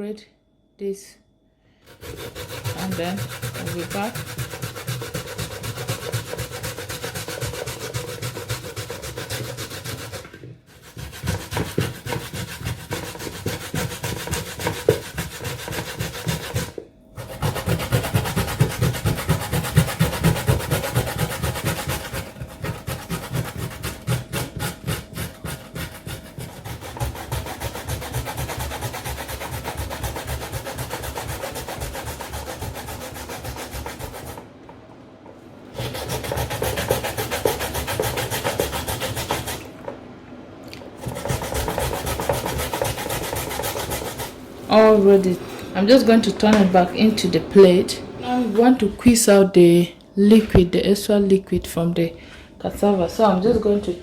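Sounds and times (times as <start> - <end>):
grater rasping: 1.9 - 34.4, 35.7 - 39.7, 41.0 - 45.6.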